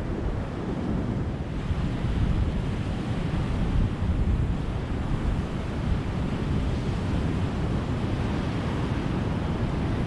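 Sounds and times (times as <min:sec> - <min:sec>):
ocean waves breaking on beach: 0:00.0 - 0:10.0.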